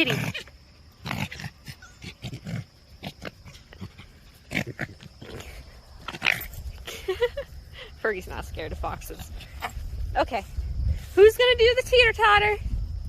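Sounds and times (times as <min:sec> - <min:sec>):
foxes vocalizing: 0:00.0 - 0:07.0.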